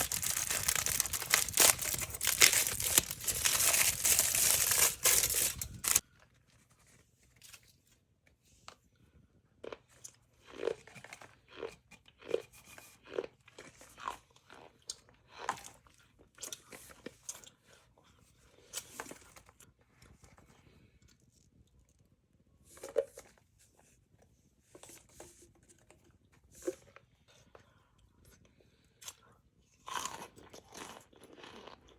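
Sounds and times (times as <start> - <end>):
loud crinkling and tearing: 0.0 - 6.0.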